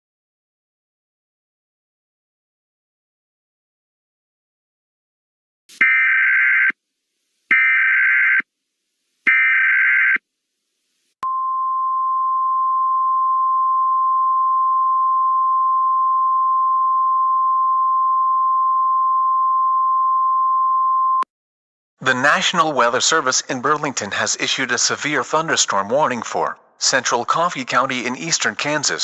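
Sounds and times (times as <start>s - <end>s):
steady single-pitch attention tone: 11.2s - 21.3s.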